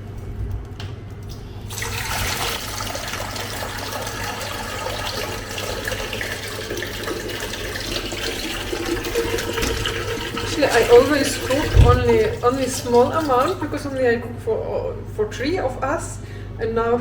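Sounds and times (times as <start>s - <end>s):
water running from tap: 1.7s - 14.0s.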